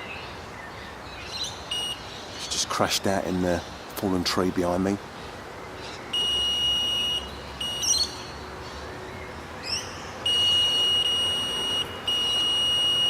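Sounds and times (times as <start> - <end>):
electronic bite alarm tone: 6.2 - 8.0, 10.2 - 13.0.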